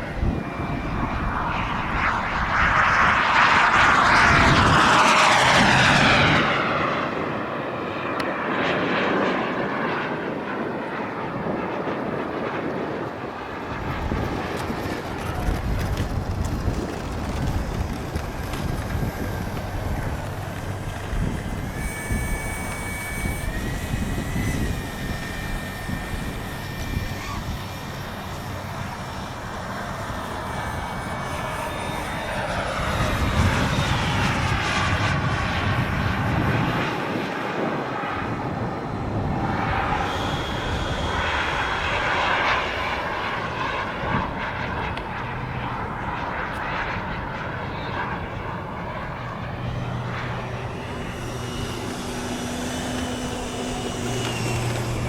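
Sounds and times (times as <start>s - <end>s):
model jet turbine whining: 0.0s - 55.0s
wind rumbling on microphone: 0.0s - 55.0s.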